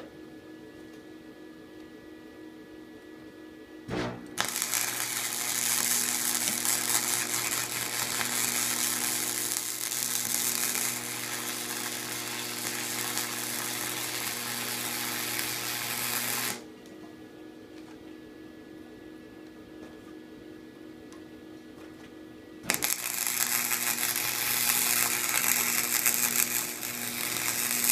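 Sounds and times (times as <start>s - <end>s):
low electrical hum: 0.0s - 27.9s
arc welder crackling sizzle: 4.2s - 16.7s, 22.6s - 27.9s.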